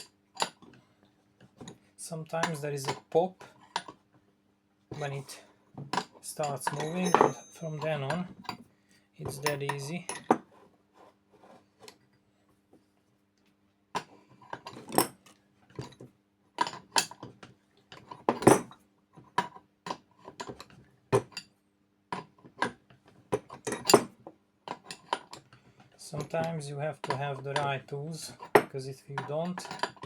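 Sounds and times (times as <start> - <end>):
metal tools clinking and knocking: 5.9 - 8.6, 28.3 - 30.0
sharp metallic clinks: 6.7 - 8.0.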